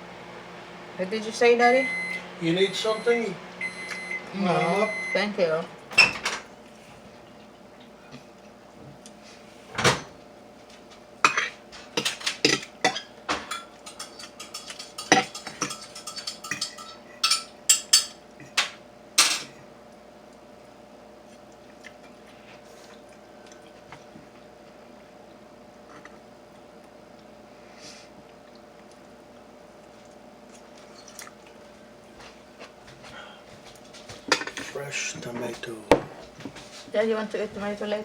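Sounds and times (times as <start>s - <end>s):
faint steady hum: 0.0s - 38.0s
dishes and cutlery clattering: 11.3s - 19.6s, 34.3s - 34.8s.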